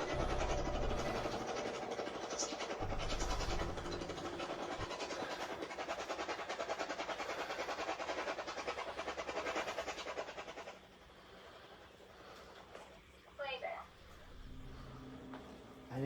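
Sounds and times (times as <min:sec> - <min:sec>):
low rumble: 0:00.0 - 0:01.5, 0:02.8 - 0:05.0.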